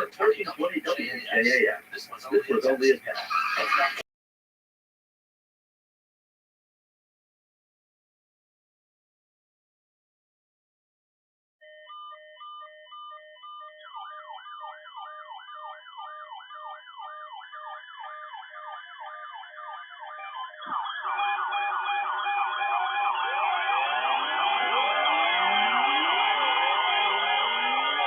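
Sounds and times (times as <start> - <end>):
electronic siren sweeps: 11.6 - 28.0.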